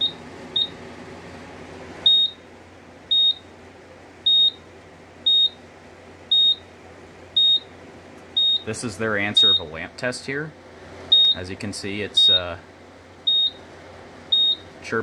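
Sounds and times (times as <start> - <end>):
fire alarm panel beeping: 0.0 - 0.8, 2.0 - 2.4, 3.1 - 3.5, 4.2 - 4.6, 5.2 - 5.6, 6.3 - 6.6, 7.4 - 7.7, 8.4 - 8.7, 9.4 - 9.8, 11.1 - 11.4, 13.2 - 13.6, 14.3 - 14.7.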